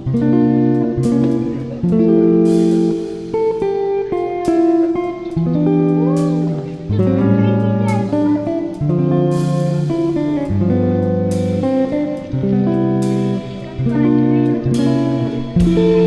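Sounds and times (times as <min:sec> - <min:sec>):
guitar background music: 0:00.0 - 0:16.0
cymbal crash: 0:15.3 - 0:16.0.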